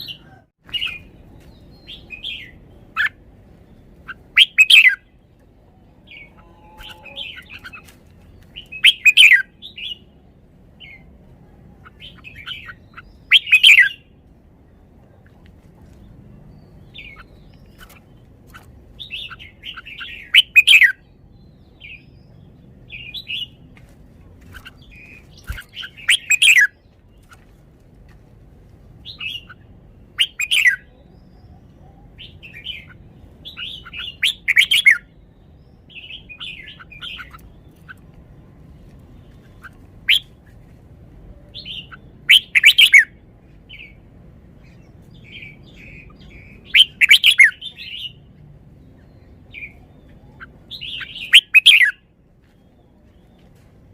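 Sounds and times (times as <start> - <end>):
bird chirping and whistling: 4.3 - 5.0, 8.7 - 9.5, 12.5 - 14.0, 19.0 - 21.0, 25.4 - 26.7, 30.2 - 30.8, 33.5 - 35.0, 41.6 - 43.1, 45.9 - 47.6, 50.7 - 52.0.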